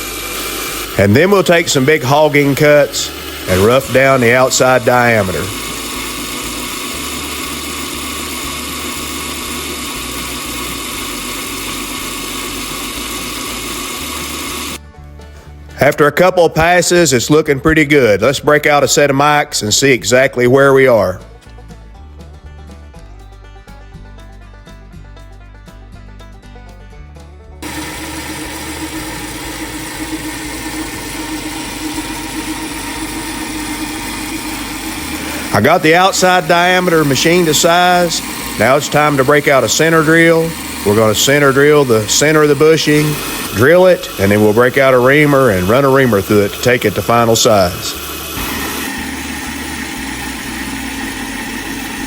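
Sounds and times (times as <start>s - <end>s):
metal lathe cutting: 0.0s - 14.8s, 27.6s - 52.0s.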